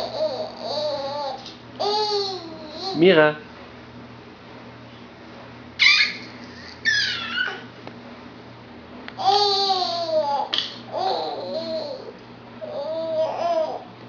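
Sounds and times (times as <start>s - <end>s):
baby squealing and babbling: 5.8s - 7.7s, 9.2s - 13.8s.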